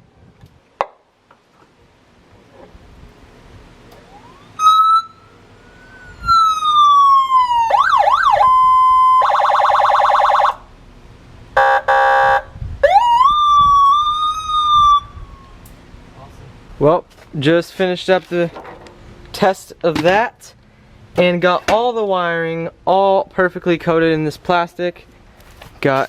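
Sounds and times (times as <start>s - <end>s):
electronic siren wailing and yelping: 4.0s - 10.7s, 12.3s - 15.6s
buzzy horn honk: 11.6s - 12.6s.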